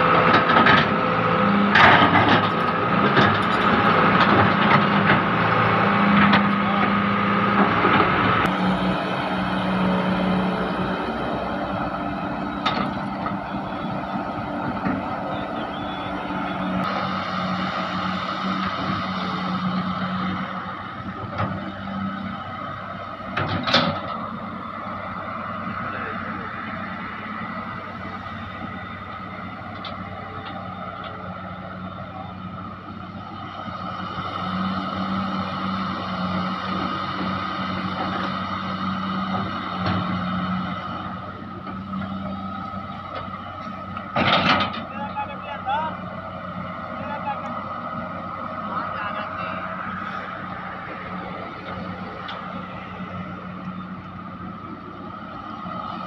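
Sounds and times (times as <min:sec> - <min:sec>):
heavy diesel engine running: 0:00.0 - 0:56.0.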